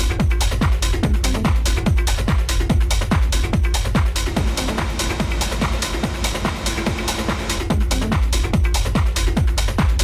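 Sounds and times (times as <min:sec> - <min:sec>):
hi-hats and percussion: 0:00.0 - 0:10.0
techno kick drum: 0:00.0 - 0:10.0
constant bass: 0:04.2 - 0:08.1.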